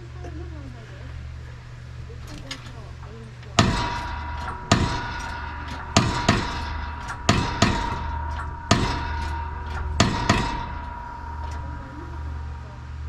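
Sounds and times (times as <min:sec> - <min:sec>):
steady ringing tone: 0:01.2 - 0:13.0
hammer striking metal: 0:02.2 - 0:13.0.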